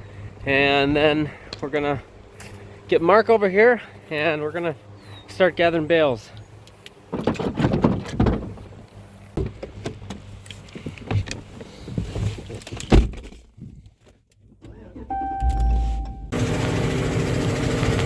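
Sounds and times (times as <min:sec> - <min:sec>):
knocks and clatter in vehicle: 0:07.1 - 0:08.7, 0:09.4 - 0:14.2
steady beep: 0:15.1 - 0:16.4.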